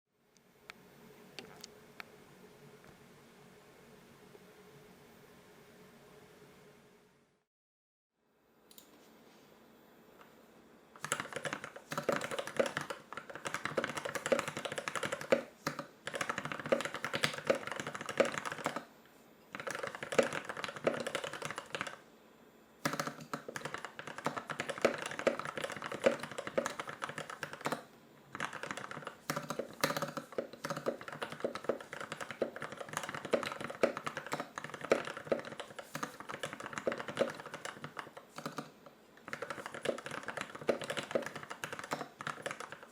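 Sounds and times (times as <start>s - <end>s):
mechanical keyboard typing: 11.0s - 18.9s, 19.5s - 22.0s, 22.8s - 42.9s.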